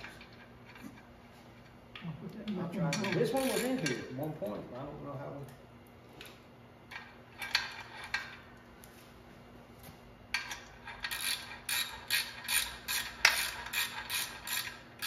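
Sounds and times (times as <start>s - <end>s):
ratchet wrench clicking: 2.9s - 4.0s, 10.4s - 15.0s.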